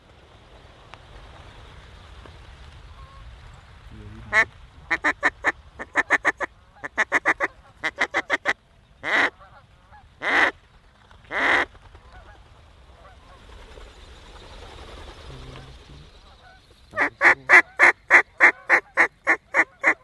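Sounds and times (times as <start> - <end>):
duck call quacks: 4.3 - 9.5, 10.2 - 10.5, 11.3 - 11.7, 17.0 - 20.0.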